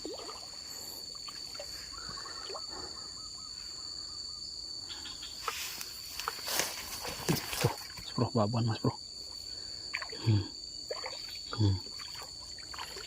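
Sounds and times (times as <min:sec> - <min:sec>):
faint chirps: 0:00.2 - 0:06.4, 0:09.3 - 0:13.0.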